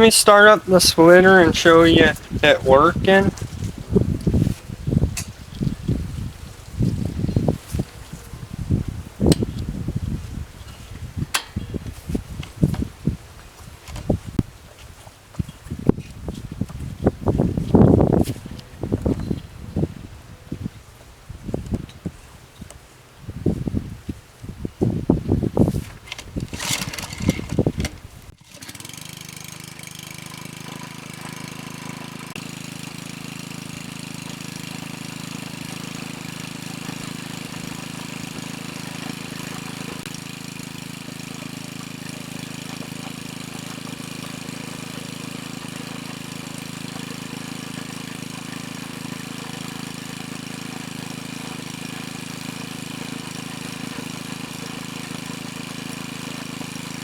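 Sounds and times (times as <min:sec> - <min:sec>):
small gasoline engine running: 0:00.0 - 0:57.0
loud clatter: 0:26.0 - 0:29.0.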